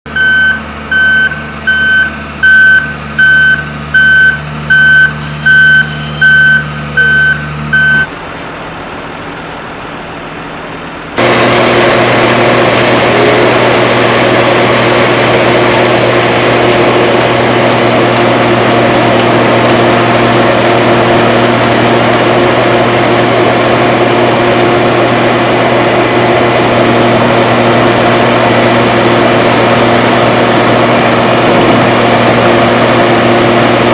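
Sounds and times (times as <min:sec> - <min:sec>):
loud heavy engine running: 0:00.0 - 0:33.9
reversing alarm beeping: 0:00.1 - 0:08.1
vehicle engine idling: 0:00.1 - 0:33.9.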